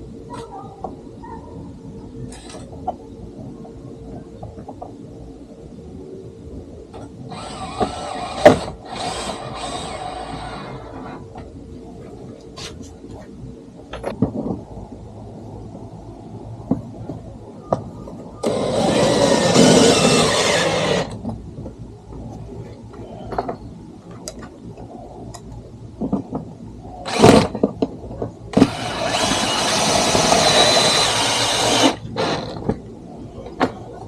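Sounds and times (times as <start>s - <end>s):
cordless power driver running: 18.4s - 21.2s, 28.6s - 32.6s.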